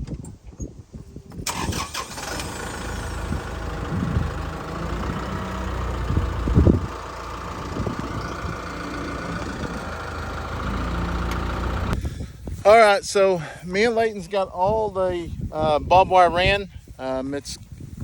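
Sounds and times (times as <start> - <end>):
engine running: 1.5 - 12.0.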